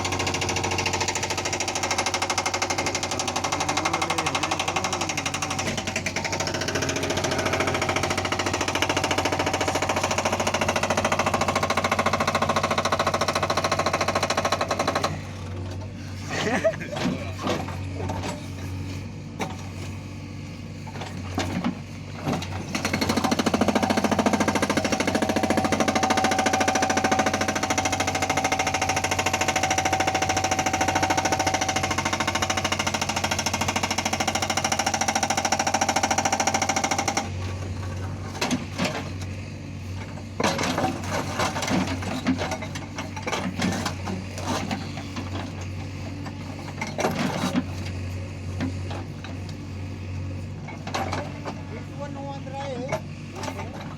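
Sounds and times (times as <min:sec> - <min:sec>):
hydraulic breaker hammering stone: 0:00.0 - 0:15.4, 0:21.1 - 0:39.3, 0:40.0 - 0:45.7
excavator engine hum: 0:00.0 - 0:53.9.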